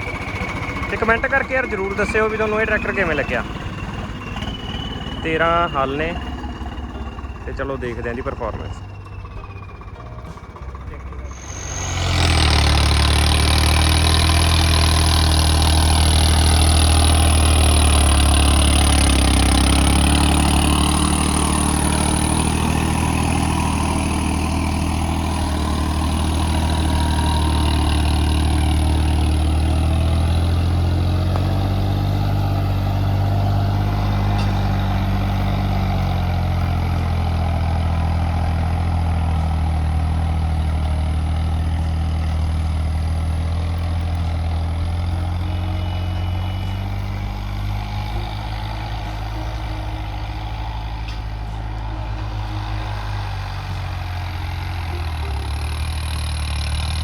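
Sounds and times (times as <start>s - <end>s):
turbo whistle: 0.0s - 10.0s, 11.2s - 30.1s
tractor diesel engine running: 0.0s - 57.0s.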